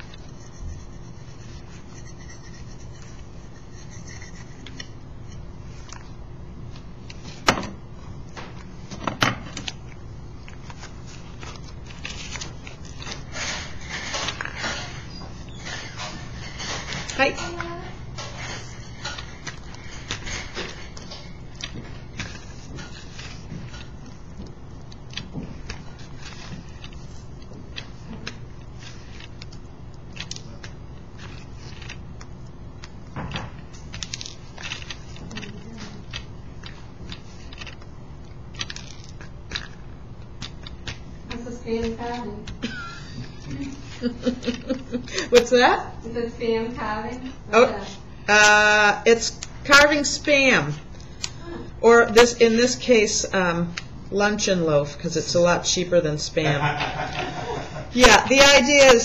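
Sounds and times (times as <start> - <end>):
rubbing and scraping: 0.0 - 5.4, 10.4 - 42.6
steady low hum: 0.0 - 59.0
flux crackling and popping: 9.5 - 51.5.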